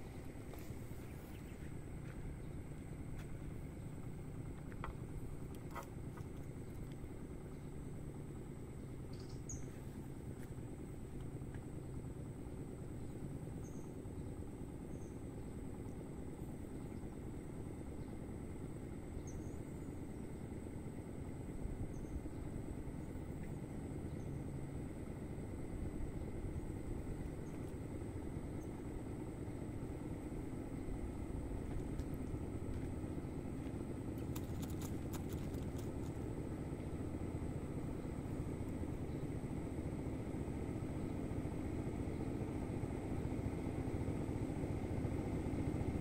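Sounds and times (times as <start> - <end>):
steady low rumble: 0.0 - 46.0.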